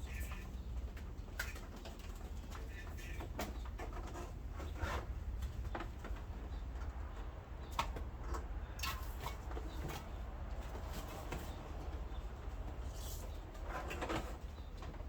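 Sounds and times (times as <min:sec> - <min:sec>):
clicks and rustles of handling: 0:00.1 - 0:15.0.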